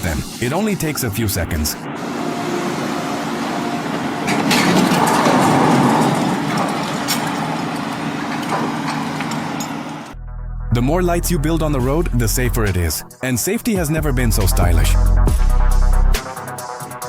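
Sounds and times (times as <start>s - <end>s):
heavy engine running: 0.9s - 10.2s
loud rushing noise: 1.7s - 9.0s.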